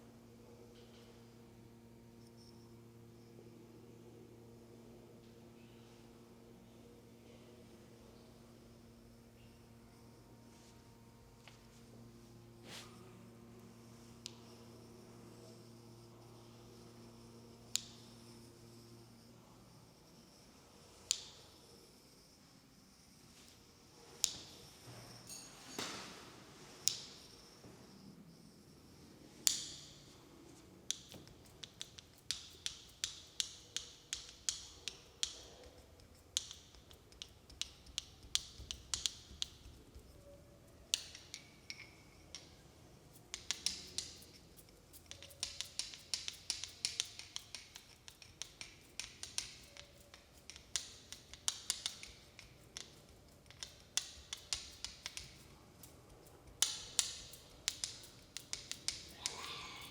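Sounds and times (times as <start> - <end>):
soft hiss of rubbing: 11.6 - 30.8
hand snaps and taps: 17.8 - 18.0, 24.2 - 24.5, 29.5 - 29.9, 45.0 - 55.4, 56.6 - 59.9.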